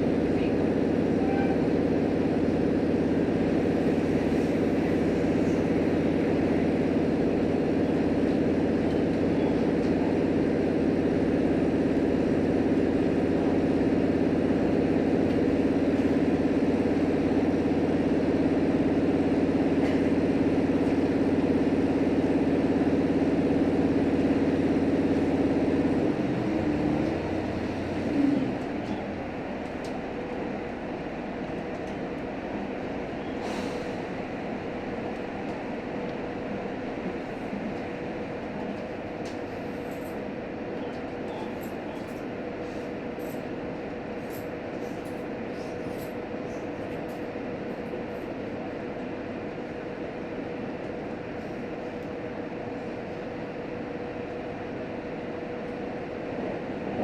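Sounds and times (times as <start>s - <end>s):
rail noise: 0.0s - 57.0s
railcar engine drone: 0.0s - 57.0s.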